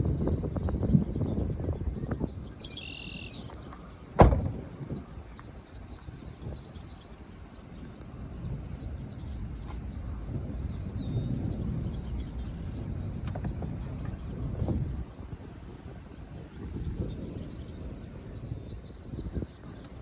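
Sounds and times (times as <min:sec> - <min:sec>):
strong storm wind rumble: 0:00.0 - 0:20.0
faint bird chirps: 0:01.9 - 0:04.0
sharp knock: 0:04.2 - 0:04.6.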